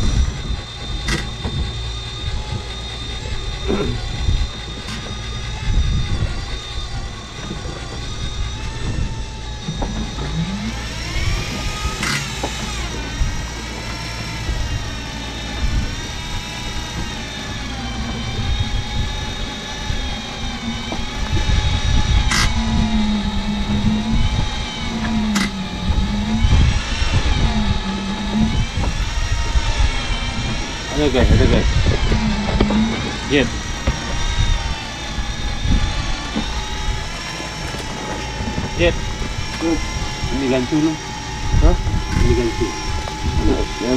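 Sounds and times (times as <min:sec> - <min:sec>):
boat engine rumbling: 0:00.0 - 0:43.9
sharp clicks: 0:16.4 - 0:30.6.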